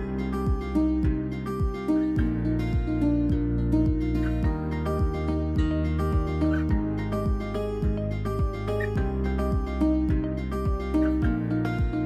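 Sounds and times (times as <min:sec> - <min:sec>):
low thumping beat: 0:00.0 - 0:12.0
music with held chords: 0:00.0 - 0:12.0.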